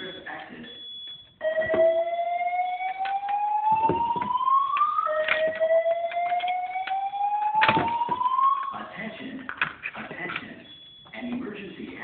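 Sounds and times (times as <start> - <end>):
fire alarm whoop tone: 0.0 - 8.9.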